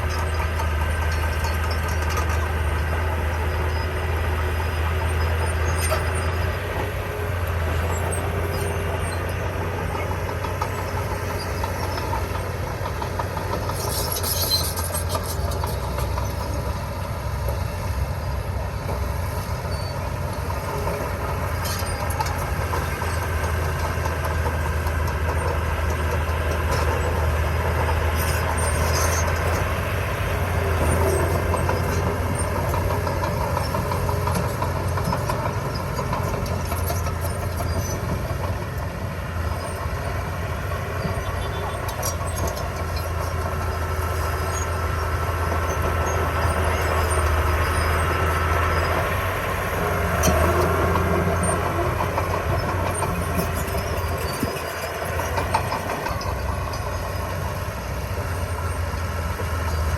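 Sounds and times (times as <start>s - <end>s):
metallic squeaks and clanks: 0.0s - 6.9s, 7.5s - 16.9s, 19.5s - 29.9s, 41.0s - 49.3s, 49.9s - 57.4s
bulldozer diesel engine running: 0.0s - 59.9s.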